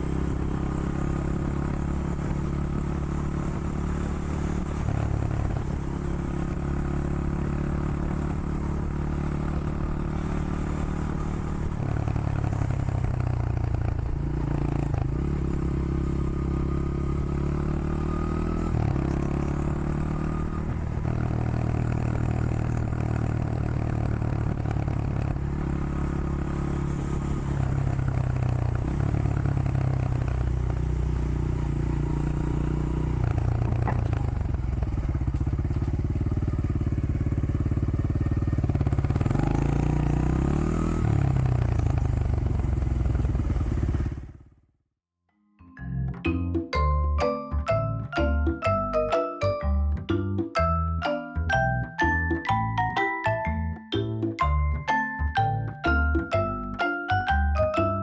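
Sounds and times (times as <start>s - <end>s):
motorcycle engine revving: 0.0s - 44.6s.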